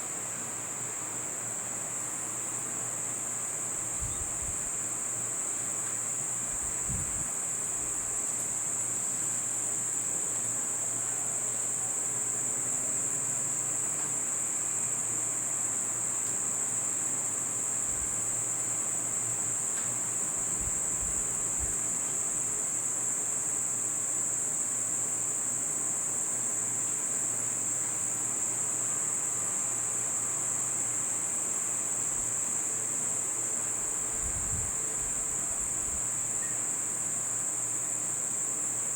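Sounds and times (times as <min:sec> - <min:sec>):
high-pitched insect drone: 0:33.8 - 0:37.5.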